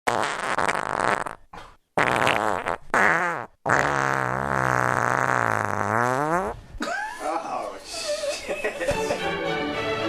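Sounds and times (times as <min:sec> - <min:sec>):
fart sound effects: 0:00.1 - 0:06.6.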